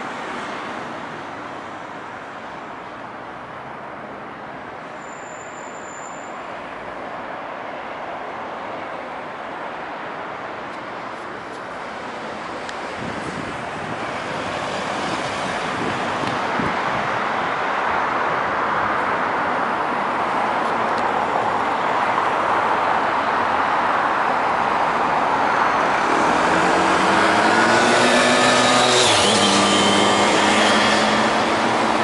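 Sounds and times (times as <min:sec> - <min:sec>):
passing vehicles: 0:00.0 - 0:32.0
vehicle engine speeding up: 0:26.0 - 0:32.0.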